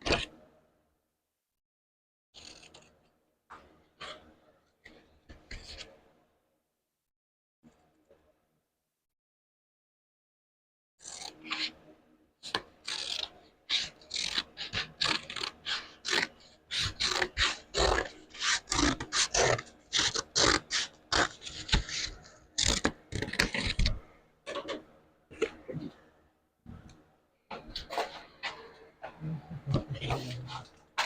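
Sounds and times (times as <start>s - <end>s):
rasp strokes on sheet metal: 12.4s - 23.9s.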